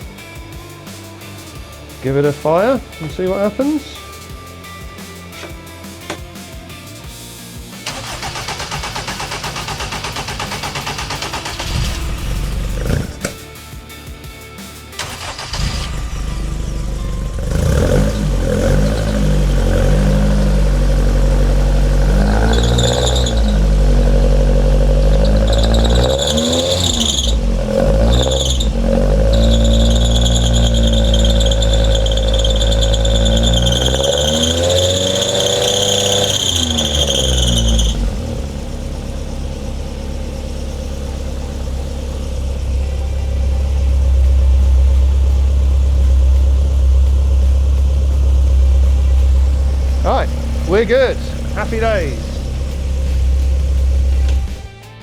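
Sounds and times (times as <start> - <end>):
car engine revving: 7.8 - 13.8, 14.9 - 54.7
high-pitched squeal: 15.2 - 39.3.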